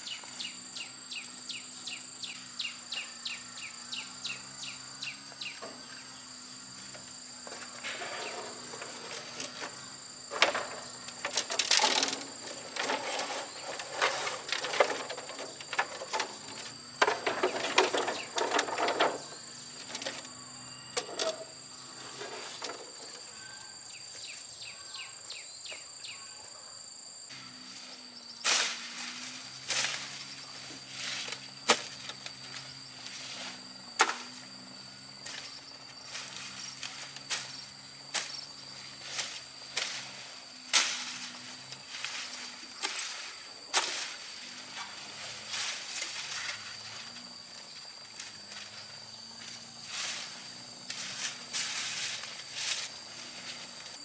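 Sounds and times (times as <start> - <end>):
fast pulsing insect chirp: 0.0 - 54.0
insects trilling: 0.0 - 54.0
rustling scraping and knocking: 6.8 - 20.4, 21.0 - 23.3.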